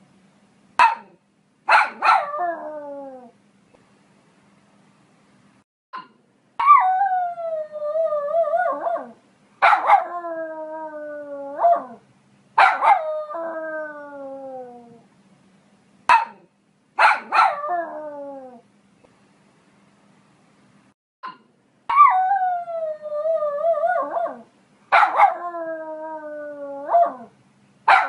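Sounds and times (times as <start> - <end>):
dog barking and whining: 0.8 - 3.3, 6.6 - 12.0, 12.6 - 15.0, 16.1 - 18.6, 21.9 - 28.0.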